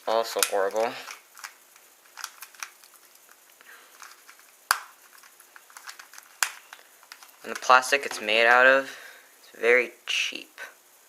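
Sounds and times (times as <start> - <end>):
puzzle cube clicking: 0.3 - 3.4, 4.0 - 7.8
puzzle cube snaps: 0.3 - 3.4, 4.0 - 7.7.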